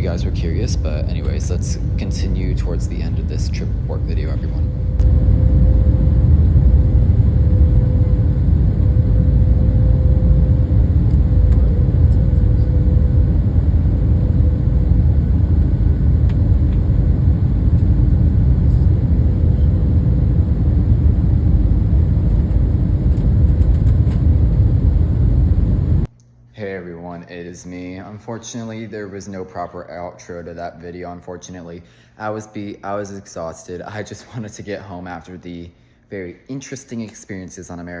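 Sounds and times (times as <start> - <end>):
aircraft cabin low rumble: 0.0 - 26.1
faint steady hum: 0.0 - 38.0.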